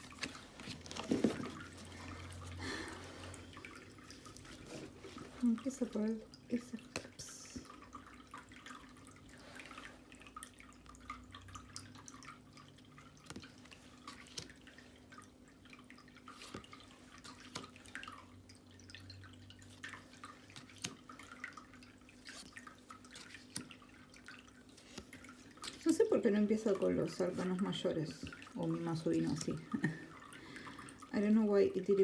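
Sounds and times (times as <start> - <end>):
faint steady hum: 0.0 - 32.0
cards clicking and rustling: 20.5 - 21.1, 22.2 - 23.8.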